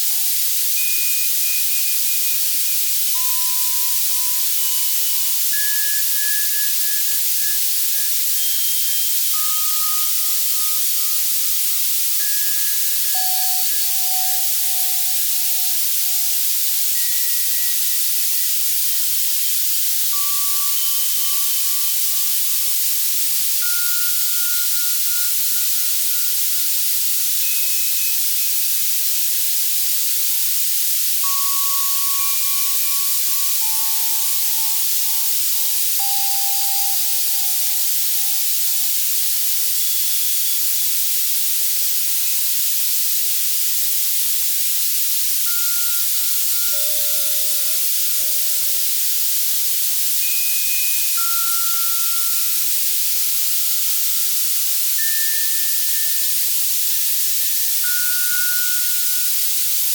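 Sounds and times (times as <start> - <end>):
white noise hiss: 0.0 - 59.9
synthesized bell tones: 32.6 - 39.0, 45.5 - 52.6.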